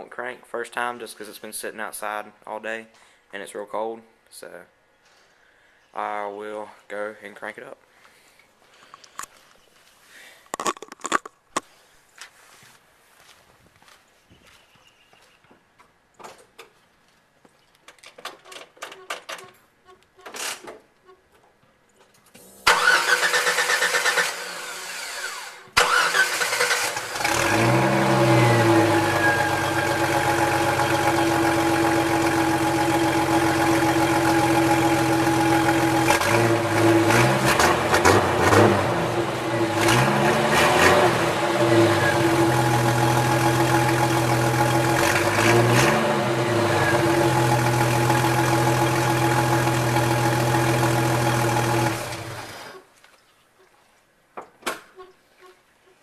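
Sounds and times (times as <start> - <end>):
starter motor cranking: 22.7 - 31.2
engine throttle blips: 25.8 - 52.6
car engine idling: 25.9 - 36.8, 41.1 - 45.4, 46.2 - 52.4.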